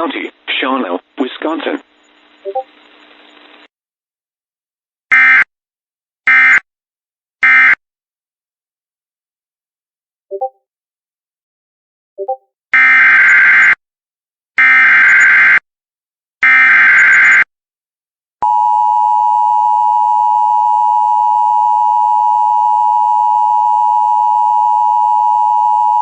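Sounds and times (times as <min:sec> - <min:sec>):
steady attention tone: 0:02.4 - 0:02.7.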